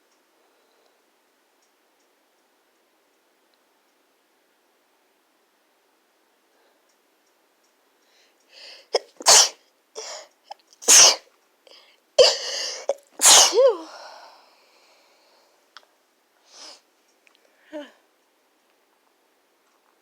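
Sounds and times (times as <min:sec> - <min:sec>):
sharp inhale: 0:08.1 - 0:09.0, 0:11.7 - 0:12.9, 0:16.4 - 0:16.8
person sneezing: 0:08.9 - 0:11.3, 0:12.2 - 0:14.0.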